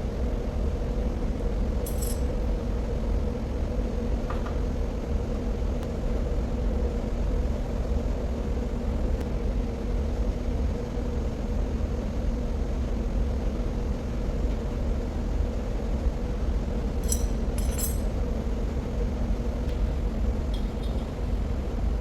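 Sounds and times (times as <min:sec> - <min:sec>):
low machinery hum: 0:00.0 - 0:22.0
light metallic clinks: 0:01.9 - 0:02.3, 0:17.0 - 0:18.1, 0:20.5 - 0:21.2.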